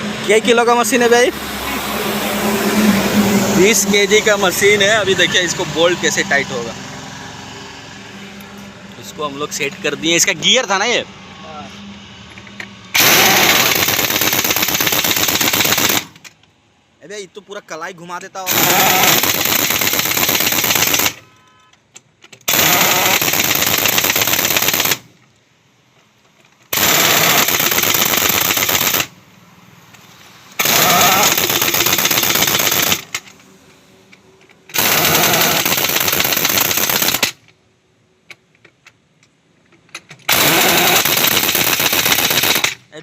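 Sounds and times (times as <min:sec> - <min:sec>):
impact wrench hammering: 0:30.6 - 0:33.3, 0:34.4 - 0:37.5.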